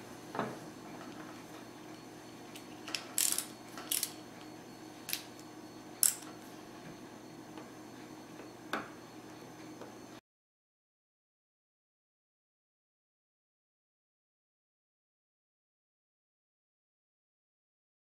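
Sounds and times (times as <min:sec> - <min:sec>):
screws being set down: 0:02.9 - 0:04.2, 0:06.0 - 0:06.3.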